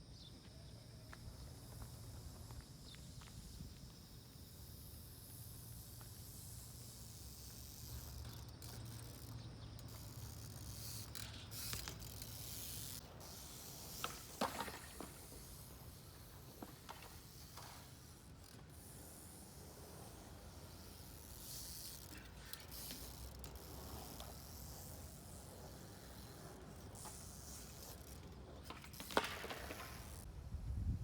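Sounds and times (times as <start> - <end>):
faint bicycle mechanical clicks: 0.4 - 30.3.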